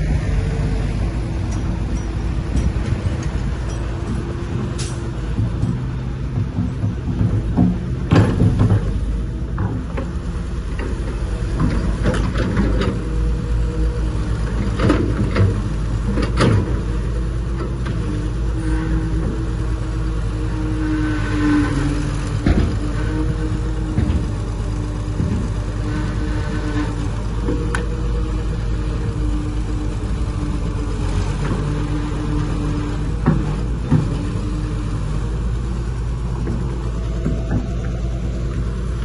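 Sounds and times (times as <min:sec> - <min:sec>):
diesel machine engine rumbling: 0:00.0 - 0:39.0
sharp knocks: 0:04.0 - 0:10.1.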